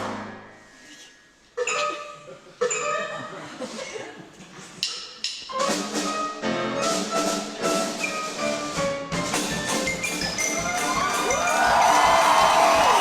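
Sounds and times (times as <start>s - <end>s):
orchestral music: 0.0s - 0.7s, 5.5s - 13.0s
xylophone-like mallet notes: 1.6s - 3.2s, 9.5s - 12.4s
wood-block hits: 4.8s - 5.6s.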